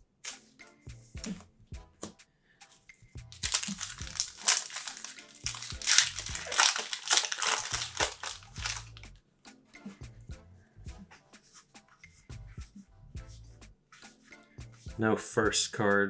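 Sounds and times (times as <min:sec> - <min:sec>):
foil wrapper crinkling: 0:03.4 - 0:09.0.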